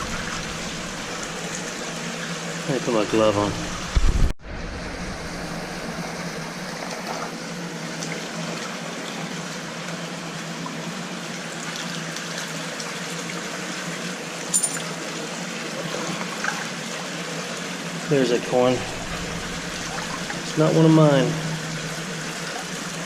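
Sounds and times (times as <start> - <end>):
creek water trickling: 17.9 - 23.0.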